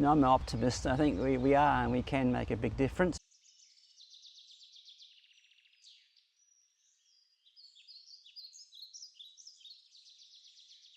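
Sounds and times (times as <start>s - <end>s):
faint whistled bird song: 3.2s - 10.9s.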